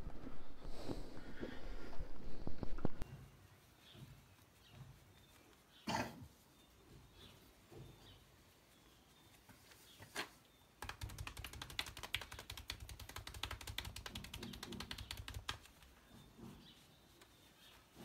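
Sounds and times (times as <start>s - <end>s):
hands tapping on body: 10.8s - 16.0s.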